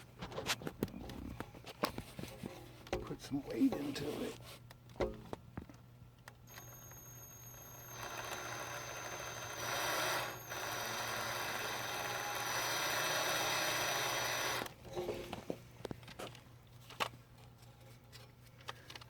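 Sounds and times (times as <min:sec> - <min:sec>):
electric drill whining: 0:06.5 - 0:14.7.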